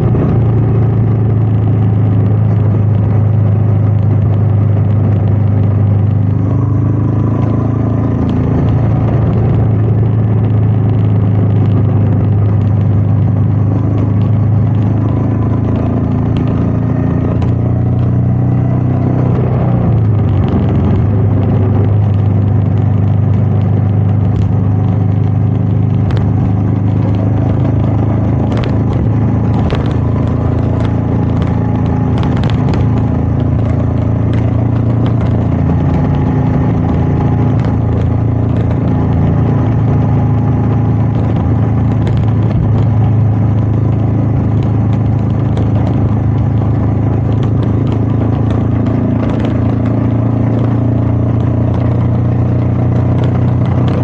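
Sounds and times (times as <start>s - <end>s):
motorcycle engine running: 0.0s - 54.0s
wind noise: 0.0s - 54.0s.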